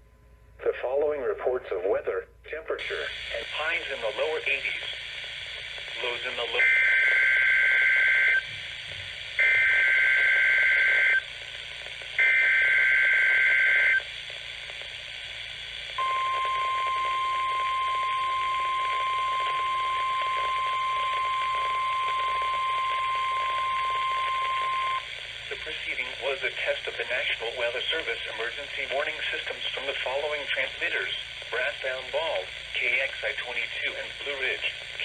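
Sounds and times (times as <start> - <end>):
static hiss: 2.8 - 35.0
steady warning alarm tone: 6.0 - 11.3, 12.2 - 14.0, 16.0 - 25.1.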